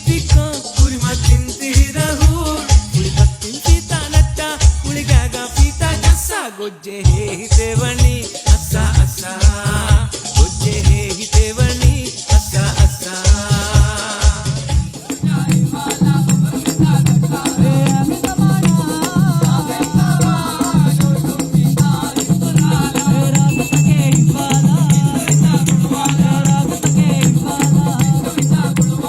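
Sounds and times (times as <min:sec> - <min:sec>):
shaker rattle: 0:00.0 - 0:06.0, 0:07.4 - 0:29.0
low repeating beat: 0:00.0 - 0:06.3, 0:07.1 - 0:29.0
melody line: 0:23.5 - 0:25.0.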